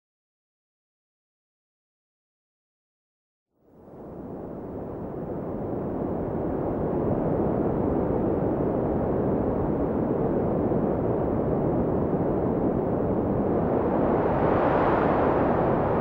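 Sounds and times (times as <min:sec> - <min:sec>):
sea surf rushing: 0:13.9 - 0:16.0.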